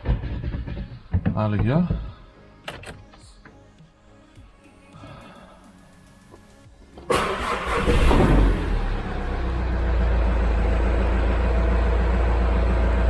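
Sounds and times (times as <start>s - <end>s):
engine cranking and idling: 6.8s - 13.0s.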